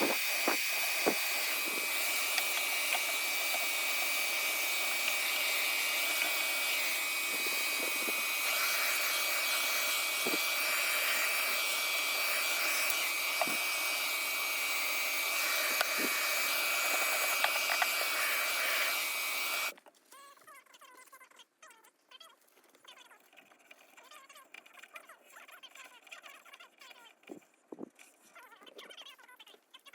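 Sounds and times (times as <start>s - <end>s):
electric cleaner rushing air: 0.0s - 19.7s.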